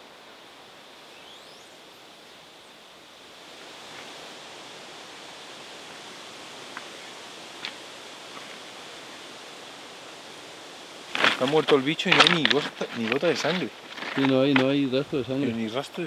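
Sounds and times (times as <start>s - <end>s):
outdoor rustling noise: 3.3s - 16.0s.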